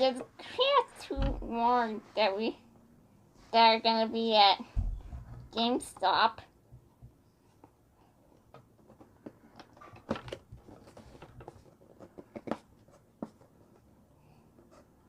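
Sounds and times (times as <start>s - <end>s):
plastic packaging clicks and rustles: 8.5s - 13.5s.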